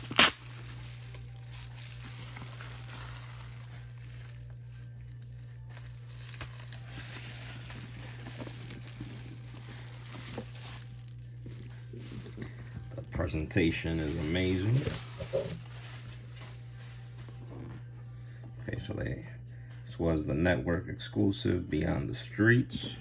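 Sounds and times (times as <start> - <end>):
bubble wrap crinkling: 0.0 - 17.9
steady low hum: 0.0 - 23.0.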